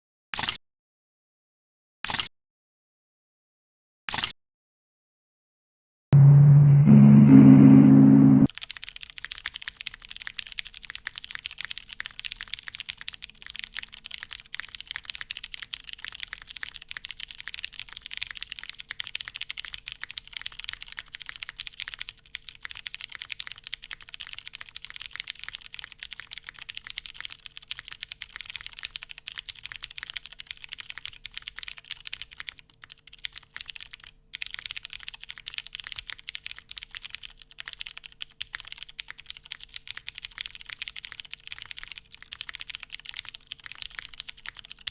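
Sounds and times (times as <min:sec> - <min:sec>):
fast typing on mechanical keyboard: 0:08.5 - 0:44.9.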